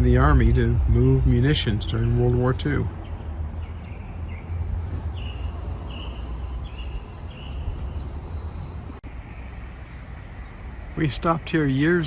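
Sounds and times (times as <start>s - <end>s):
low outdoor rumble: 0.0s - 12.0s
small bird chirping: 3.0s - 10.7s.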